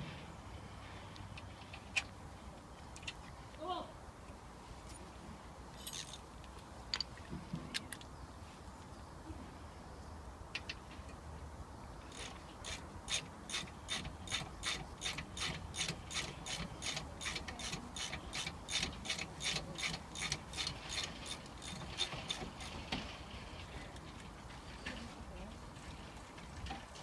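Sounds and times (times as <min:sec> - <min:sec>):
socket ratchet clicking: 0:12.1 - 0:22.7.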